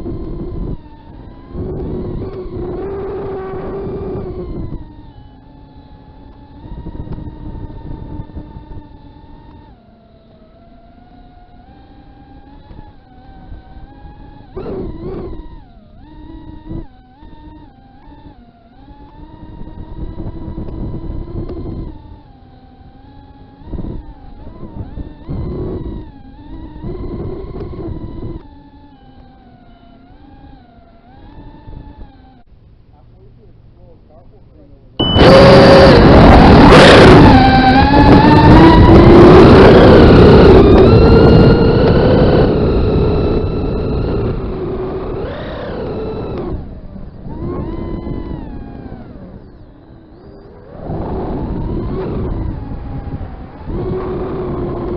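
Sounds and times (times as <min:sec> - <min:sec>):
quadcopter motors whining: 0:00.0 - 0:54.9
wind rush: 0:35.0 - 0:54.9.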